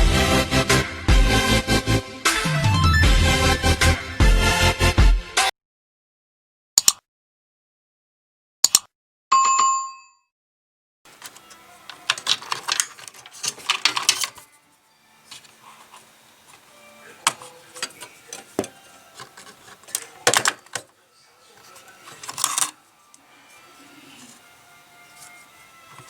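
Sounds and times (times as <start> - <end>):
plastic and metal clicking and rattling: 11.1 - 14.6, 15.3 - 23.2
handling noise: 11.1 - 26.0.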